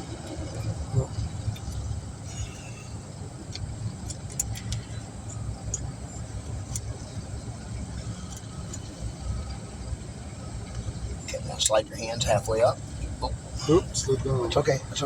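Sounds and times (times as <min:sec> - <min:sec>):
low vehicle rumble: 0:00.0 - 0:15.0
light metallic clicks and taps: 0:03.5 - 0:05.9.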